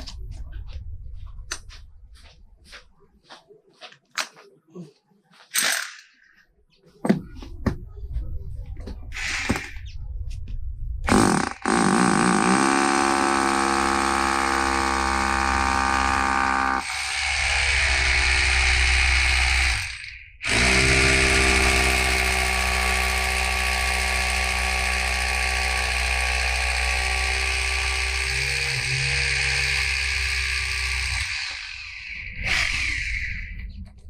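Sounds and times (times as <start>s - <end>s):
rotary hammer drilling concrete: 5.6s - 6.1s, 11.1s - 33.4s.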